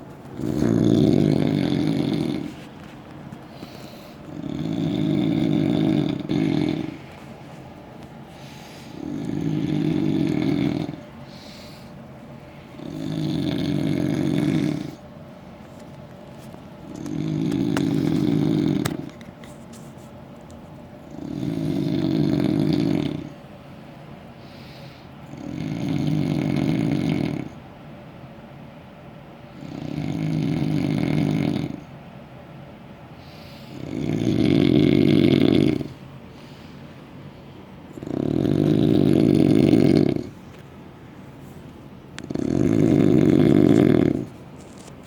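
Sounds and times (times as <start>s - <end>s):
man snoring: 0.4s - 2.5s, 4.3s - 7.0s, 9.0s - 11.0s, 12.8s - 15.0s, 17.0s - 19.1s, 21.1s - 23.3s, 25.3s - 27.6s, 29.6s - 31.9s, 33.7s - 35.9s, 38.0s - 40.3s, 42.2s - 44.3s.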